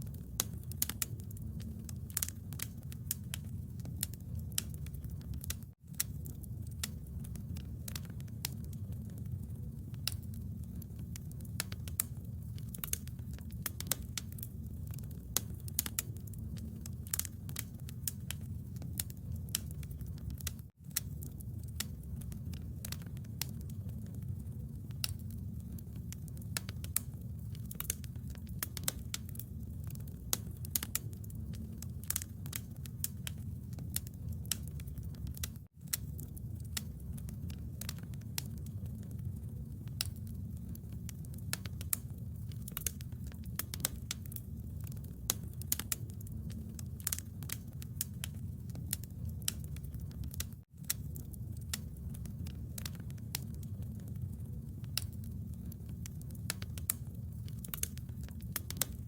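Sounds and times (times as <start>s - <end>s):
bonfire crackling and popping: 0.0s - 59.0s.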